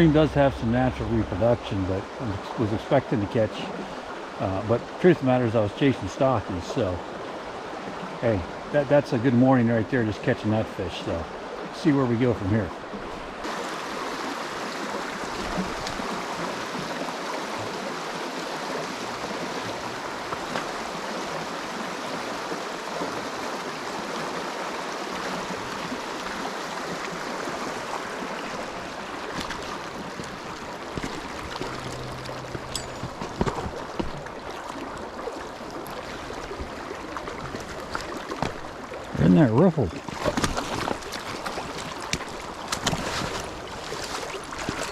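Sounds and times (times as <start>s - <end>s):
stream flowing: 0.0s - 44.9s.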